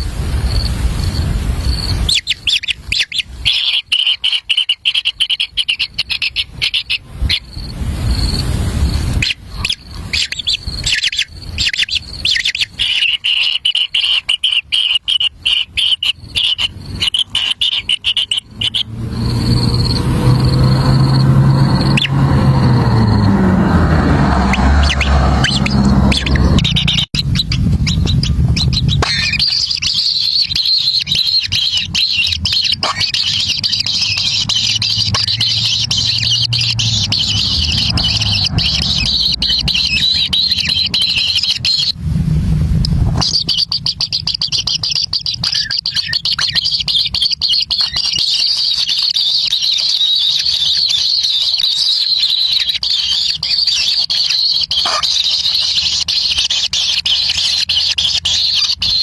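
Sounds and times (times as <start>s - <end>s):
birds chirping: 0.5s - 42.0s, 42.9s - 59.0s
low rumble: 18.5s - 29.4s, 33.8s - 43.9s.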